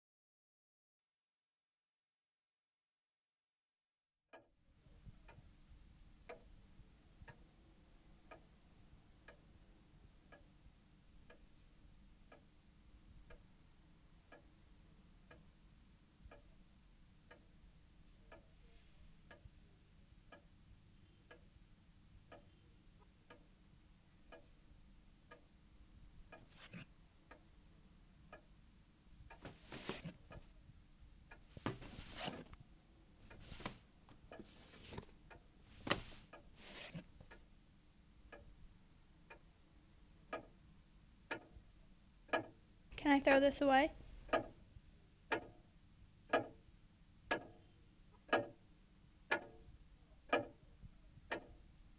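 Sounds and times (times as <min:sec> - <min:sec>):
clock ticking: 0:08.2 - 0:13.6, 0:14.2 - 0:17.7, 0:18.3 - 0:18.5, 0:19.2 - 0:19.6, 0:20.2 - 0:21.6, 0:22.2 - 0:37.6, 0:38.2 - 0:38.6, 0:39.2 - 0:39.6, 0:40.2 - 0:40.7, 0:41.3 - 0:44.7, 0:45.3 - 0:45.6, 0:46.3 - 0:46.7, 0:47.3 - 0:48.6, 0:49.2 - 0:51.8.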